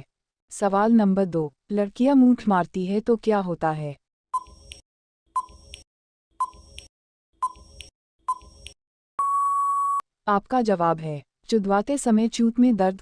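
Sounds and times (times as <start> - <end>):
long steady beep: 9.2 - 10.0
short beeps: 9.2 - 10.0.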